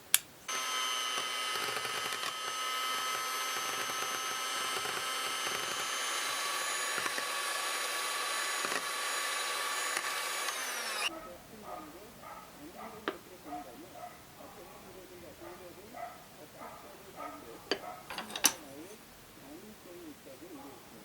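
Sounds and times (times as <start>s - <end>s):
small electric motor whirring: 0.5s - 11.1s.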